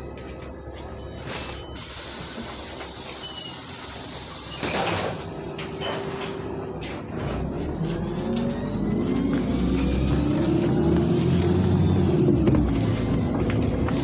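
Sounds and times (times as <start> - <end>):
bus doors clattering: 0.0 - 14.0
compressed air hissing: 1.8 - 5.5.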